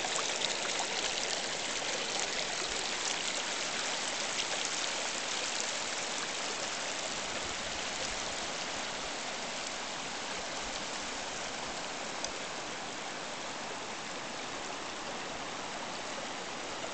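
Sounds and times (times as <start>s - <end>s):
river water rushing: 0.0s - 16.9s.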